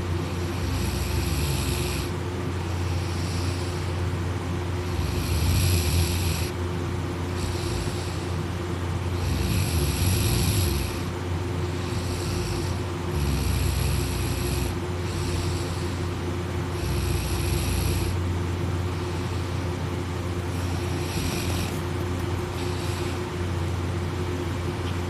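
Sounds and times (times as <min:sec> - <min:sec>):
soft breaths: 0:00.0 - 0:06.6, 0:07.2 - 0:24.0
steady low hum: 0:00.0 - 0:25.0
person snoring: 0:00.4 - 0:04.0, 0:04.9 - 0:06.6, 0:07.3 - 0:08.5, 0:09.2 - 0:18.2, 0:20.5 - 0:23.4.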